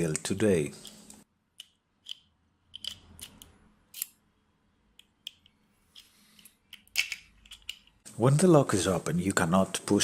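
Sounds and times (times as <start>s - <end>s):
metallic clicks and clinks of lock: 1.6s - 4.2s.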